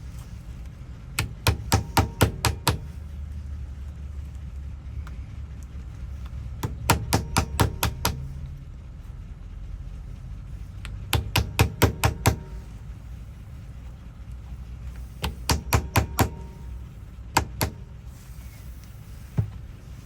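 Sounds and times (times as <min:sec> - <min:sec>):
hammer tapping: 0:01.2 - 0:03.0, 0:06.6 - 0:08.3, 0:11.1 - 0:12.8, 0:15.2 - 0:16.8, 0:17.4 - 0:17.9.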